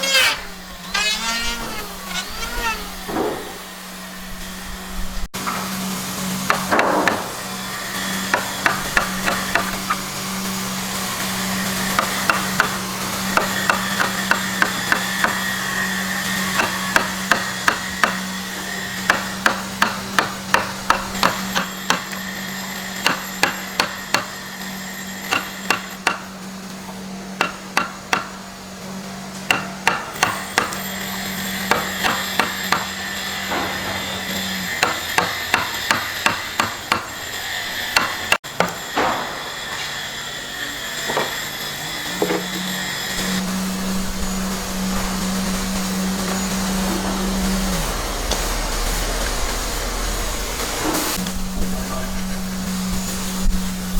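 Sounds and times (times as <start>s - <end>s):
steady low hum: 43.1s - 53.9s.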